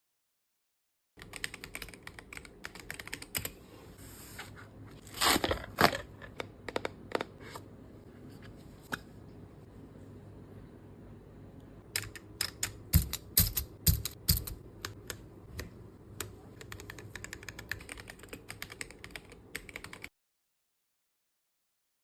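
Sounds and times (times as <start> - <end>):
typing on mechanical keyboard: 1.2 - 3.6, 11.9 - 15.2, 16.2 - 20.1.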